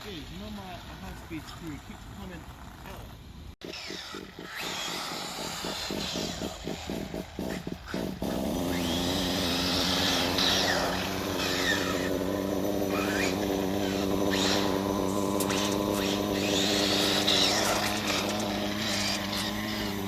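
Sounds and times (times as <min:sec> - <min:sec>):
small model car engine: 0:00.1 - 0:20.0.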